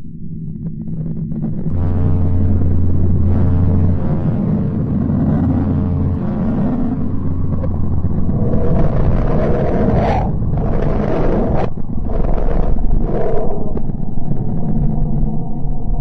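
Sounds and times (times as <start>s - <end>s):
low rumbling drone: 0.0s - 16.0s.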